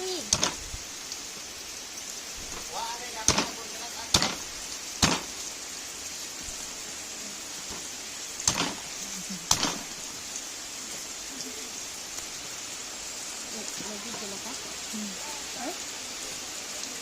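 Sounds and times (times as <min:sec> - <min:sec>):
steady rain falling: 0:00.0 - 0:17.0
sharp knocks: 0:00.3 - 0:00.6, 0:03.3 - 0:03.6, 0:04.2 - 0:05.4, 0:07.7 - 0:08.8, 0:09.5 - 0:09.8.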